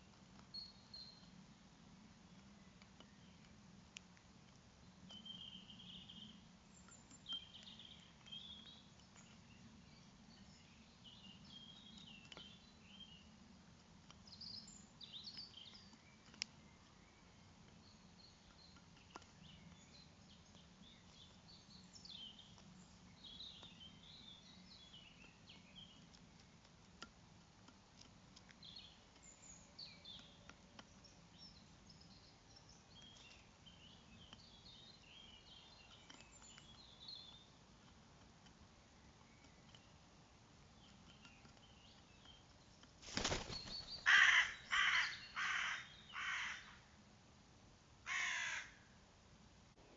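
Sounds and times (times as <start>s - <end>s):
songbirds chirping: 0.0s - 49.9s
soft clicks: 15.3s - 17.0s.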